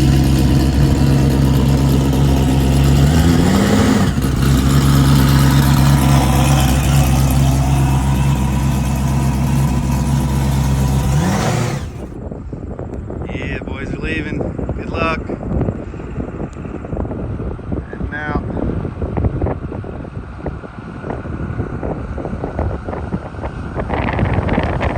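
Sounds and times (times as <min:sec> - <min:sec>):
car engine running: 0:00.0 - 0:12.2.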